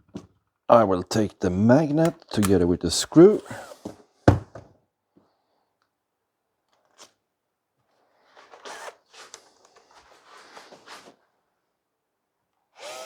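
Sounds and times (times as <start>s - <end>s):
rustling and scraping: 8.1s - 11.3s.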